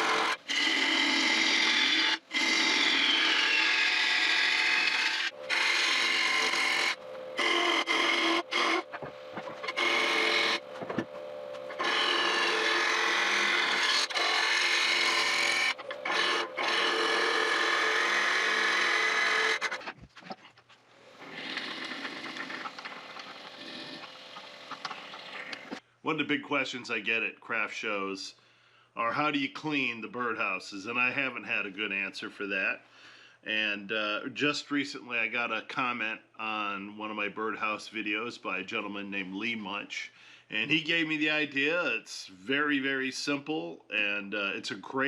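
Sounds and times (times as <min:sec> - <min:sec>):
gouge cutting wood on lathe: 0:00.0 - 0:11.0, 0:11.6 - 0:19.9, 0:21.2 - 0:25.8
lathe motor hum: 0:00.0 - 0:19.8, 0:21.1 - 0:25.8.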